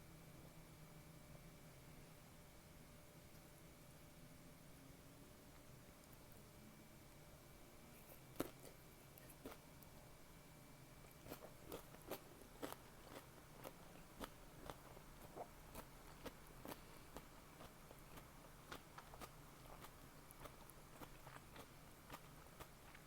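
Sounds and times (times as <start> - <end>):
crunchy salad chewing: 8.0 - 10.0, 11.0 - 23.0.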